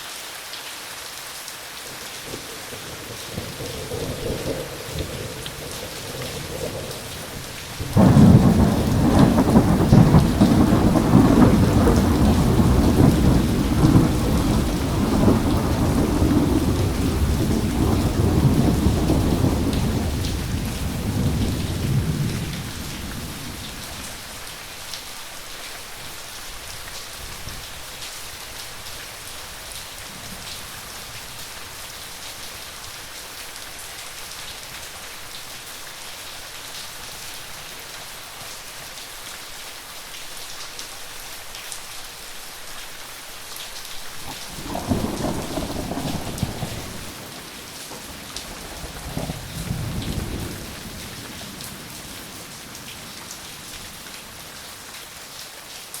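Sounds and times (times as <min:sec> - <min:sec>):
steady rain: 0:00.0 - 0:56.0
thunder rumbling: 0:02.8 - 0:24.3, 0:44.2 - 0:54.1.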